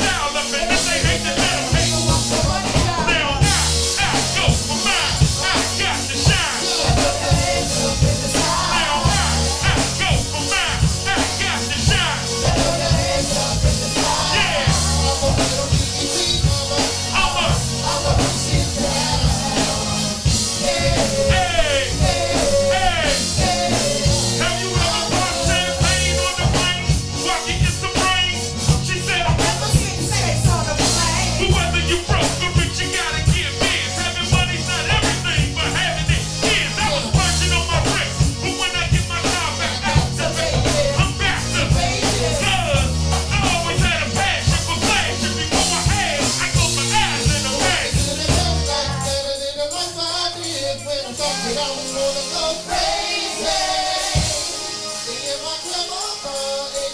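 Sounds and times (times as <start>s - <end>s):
rock music with steady beat: 0.0s - 56.9s.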